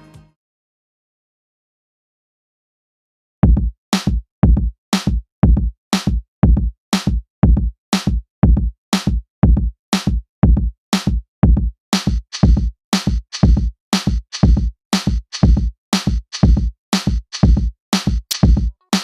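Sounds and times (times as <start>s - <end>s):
drum-machine beat: 3.4s - 19.0s.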